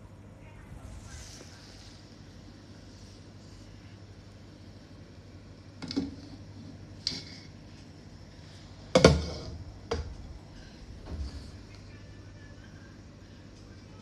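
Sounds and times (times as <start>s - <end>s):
steady low hum: 0.0s - 14.0s
kitchenware knocking and clattering: 9.0s - 10.1s.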